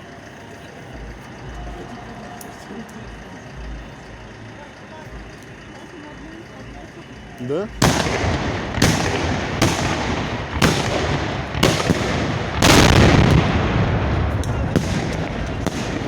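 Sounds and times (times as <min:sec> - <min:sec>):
firework reports echoing: 0:00.0 - 0:16.0.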